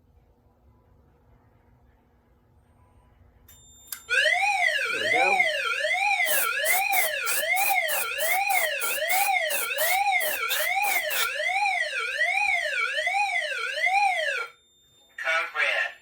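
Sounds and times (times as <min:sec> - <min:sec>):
alarm siren sweeping up and down: 0:04.1 - 0:14.6
fast pulsing buzz: 0:05.1 - 0:13.3.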